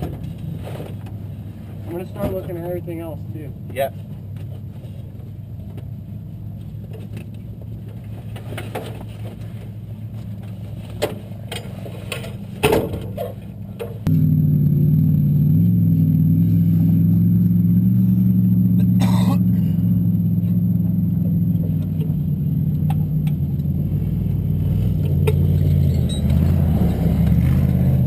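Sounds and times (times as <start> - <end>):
loud engine rumble: 0.0 - 28.0
race car engine running: 13.6 - 28.0.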